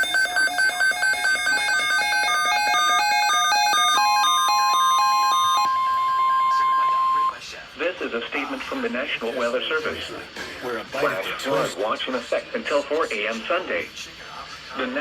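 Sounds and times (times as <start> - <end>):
electronic alert beeps: 0.0 - 7.3
steady alert tone: 0.0 - 7.4.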